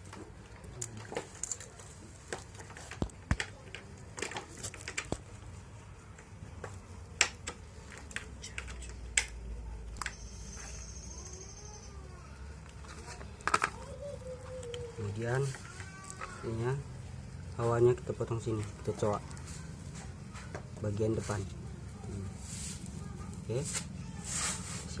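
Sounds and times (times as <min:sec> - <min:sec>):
small metal parts clicking: 0:00.8 - 0:01.8.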